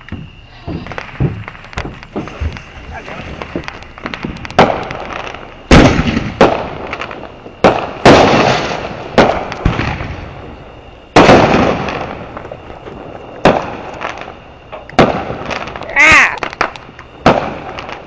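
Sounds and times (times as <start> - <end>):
fireworks bangs: 0.0 - 18.0.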